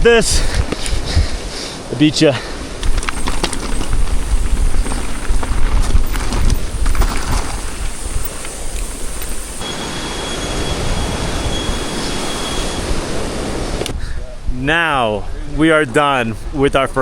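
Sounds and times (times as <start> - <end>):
wind rumbling on microphone: 0.0 - 1.9, 2.6 - 15.6
steady hiss: 0.1 - 14.4
bike clicks and rattles: 2.8 - 9.6
faint thin high whine: 2.9 - 13.9.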